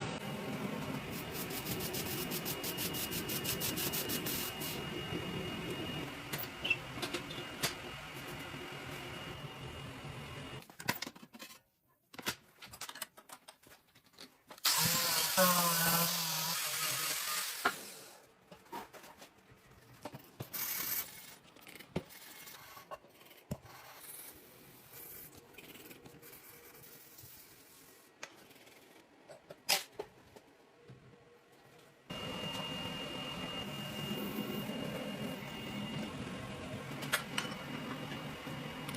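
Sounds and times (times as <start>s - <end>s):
power tool running: 14.6s - 18.0s.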